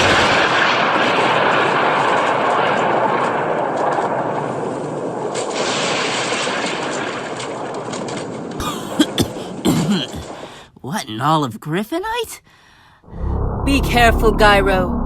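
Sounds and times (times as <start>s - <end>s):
explosion: 0.0s - 8.7s, 13.0s - 15.0s.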